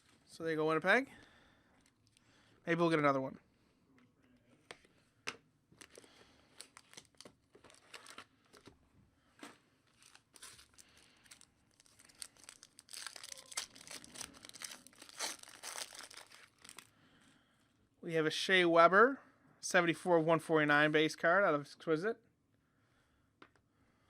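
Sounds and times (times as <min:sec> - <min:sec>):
wrapper tearing and crinkling: 0:05.8 - 0:08.6, 0:09.9 - 0:16.9.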